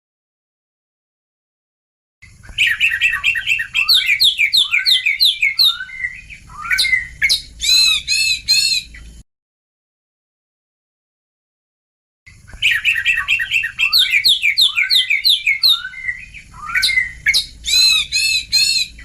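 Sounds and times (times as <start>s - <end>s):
harsh scolding bird calls: 2.3s - 9.2s, 12.4s - 19.0s
bird song whistled notes: 2.4s - 9.2s, 12.5s - 19.0s.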